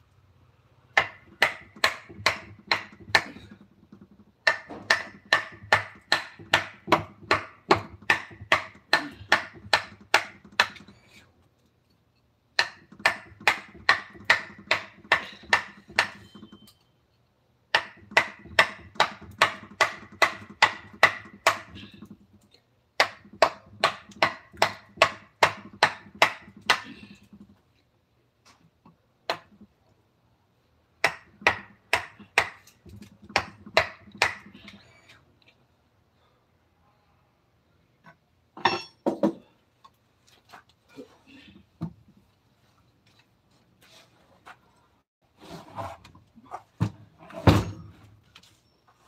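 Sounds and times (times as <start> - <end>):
mallet striking chisel: 1.0 - 3.5, 4.4 - 10.8, 23.0 - 26.9.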